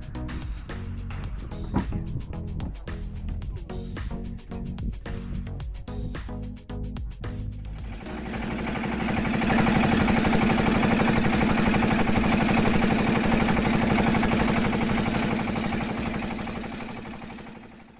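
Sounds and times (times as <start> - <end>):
boat engine droning: 7.8 - 17.9.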